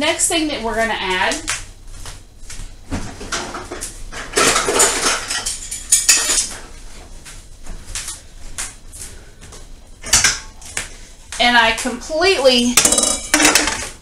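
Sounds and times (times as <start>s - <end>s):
dishes and utensils clattering: 3.3s - 6.6s, 12.8s - 14.0s.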